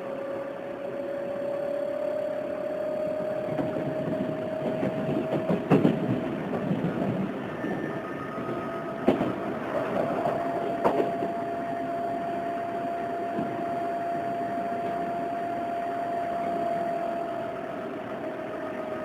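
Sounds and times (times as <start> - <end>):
electric train running: 0.0 - 19.0
rail clicks: 3.0 - 19.0.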